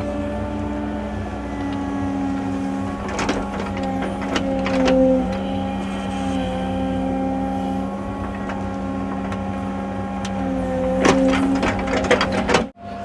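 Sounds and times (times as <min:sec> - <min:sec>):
excavator diesel engine running: 0:00.0 - 0:13.0
hydraulic whine: 0:00.0 - 0:13.0
light metal clanks: 0:08.1 - 0:12.7.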